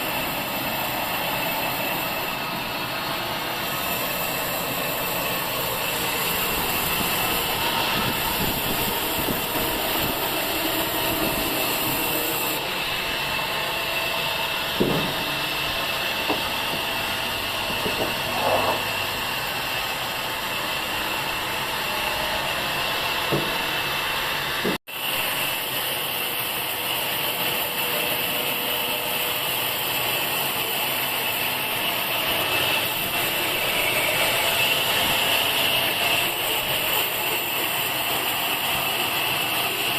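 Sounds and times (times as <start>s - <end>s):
high whine: 0.0s - 29.6s
sawmill machinery running: 0.0s - 39.9s.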